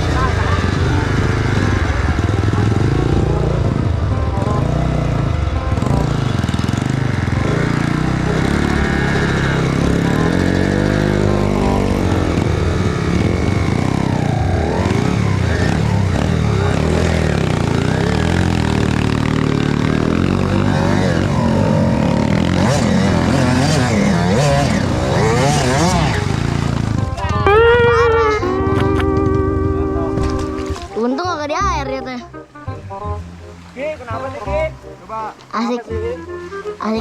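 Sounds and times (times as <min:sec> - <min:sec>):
dirt bike engine revving: 0:00.0 - 0:31.4.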